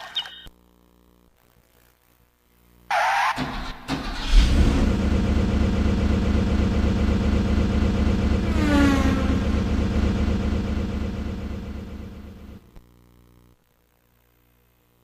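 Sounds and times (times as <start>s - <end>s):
car engine starting and idling: 3.4s - 12.6s
falling whine: 4.4s - 12.7s.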